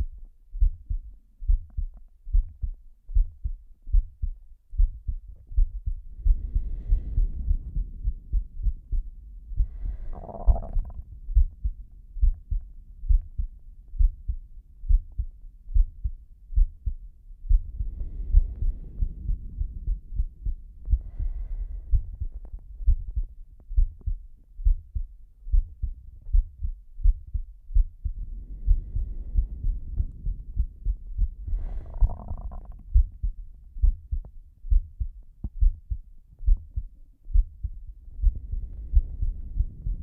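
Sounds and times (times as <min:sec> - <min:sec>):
heartbeat thumps: 0:00.0 - 0:40.0
long breaths: 0:09.5 - 0:11.0, 0:20.8 - 0:22.5, 0:28.2 - 0:32.8.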